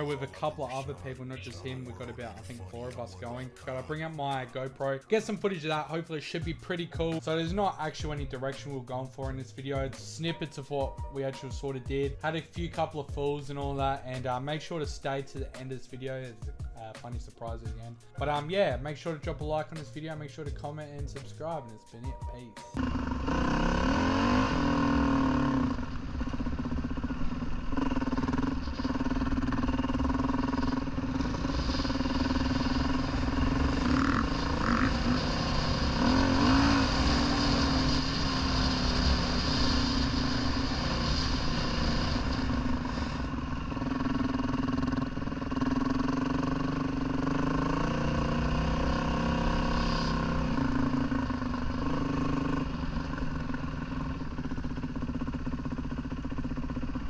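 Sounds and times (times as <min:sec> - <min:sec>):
dirt bike engine revving: 0:22.8 - 0:57.0.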